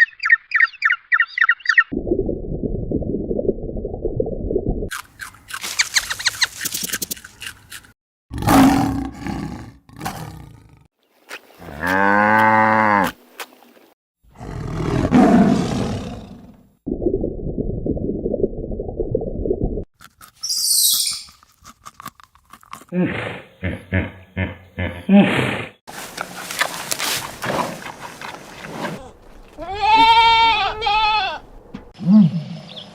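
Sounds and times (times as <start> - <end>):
low rumbling noise: 2.0 - 4.9, 16.9 - 19.9
rapid clicking animal call: 5.6 - 7.2
rough roar-like animal call: 14.3 - 16.6.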